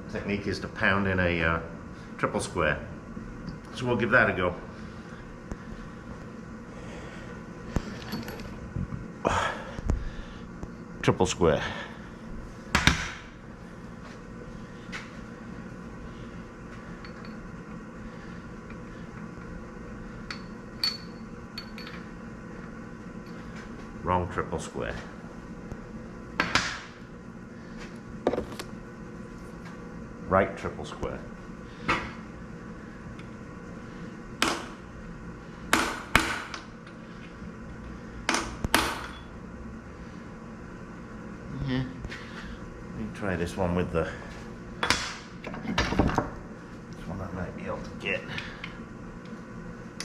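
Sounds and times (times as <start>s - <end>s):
low hum: 0.0s - 35.7s.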